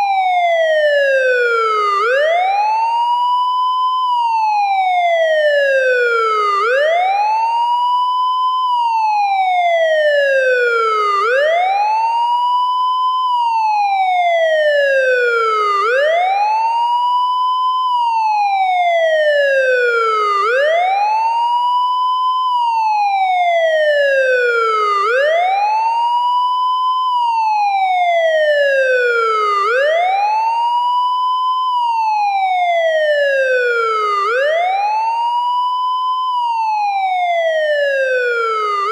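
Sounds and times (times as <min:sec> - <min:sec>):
police siren wailing: 0:00.0 - 0:38.9.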